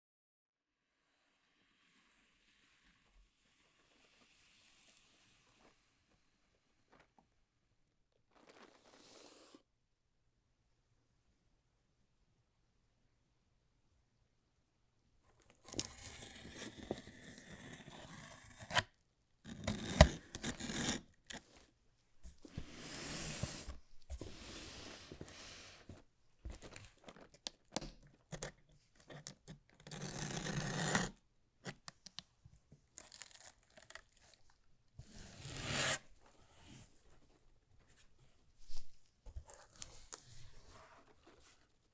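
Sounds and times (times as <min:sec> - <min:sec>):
packaging torn and crinkled: 0:33.0 - 0:34.5.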